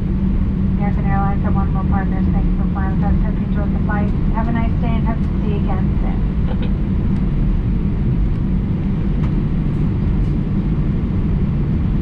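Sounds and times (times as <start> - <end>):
airplane cabin rumble: 0.0 - 12.0.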